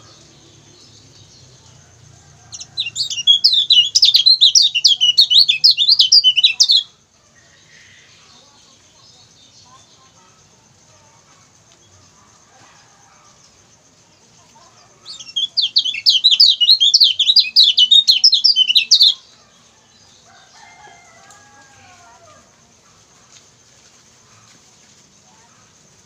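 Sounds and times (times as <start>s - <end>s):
bird singing high chirping notes: 2.6s - 6.9s, 15.1s - 19.2s.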